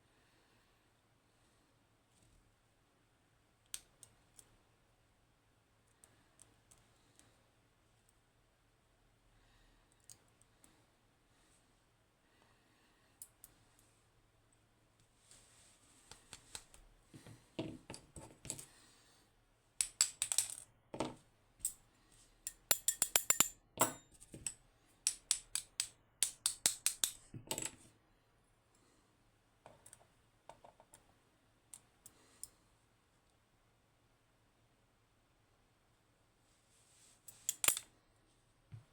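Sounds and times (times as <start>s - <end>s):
metal lock pins clinking: 22.5s - 27.8s, 37.4s - 37.9s.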